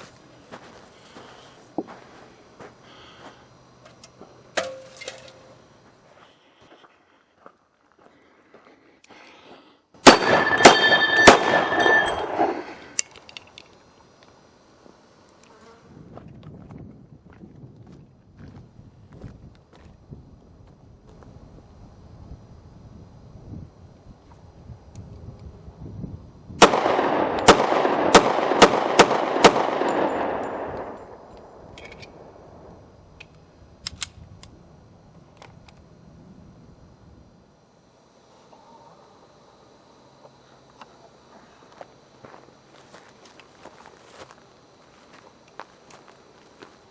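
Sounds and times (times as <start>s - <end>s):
pistol shots with echo: 10.0s - 12.7s, 26.6s - 31.2s
sharp click: 33.2s - 34.5s.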